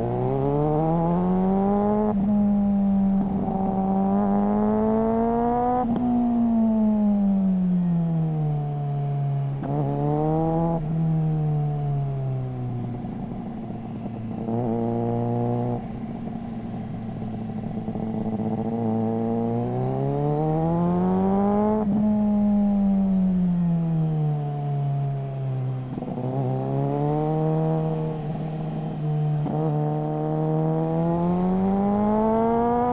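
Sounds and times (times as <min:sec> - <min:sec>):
motorcycle engine revving: 0:00.0 - 0:07.2, 0:12.8 - 0:23.7, 0:24.7 - 0:32.9.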